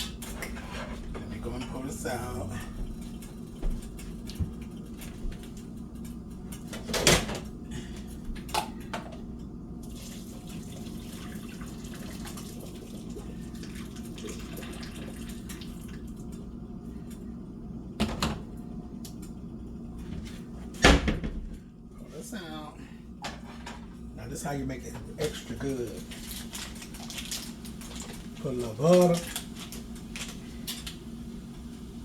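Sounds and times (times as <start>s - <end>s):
low steady hum: 0.0s - 32.0s
water running into a sink: 9.8s - 16.3s.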